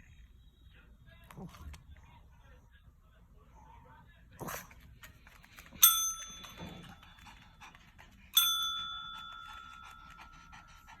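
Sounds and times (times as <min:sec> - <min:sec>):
small bell ding: 0:05.8 - 0:06.8, 0:08.4 - 0:09.8
dog panting: 0:06.4 - 0:11.0.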